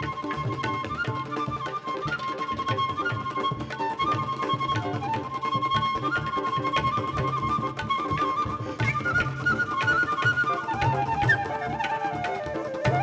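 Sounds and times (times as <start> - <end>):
sliding melody line: 8.8 - 13.0.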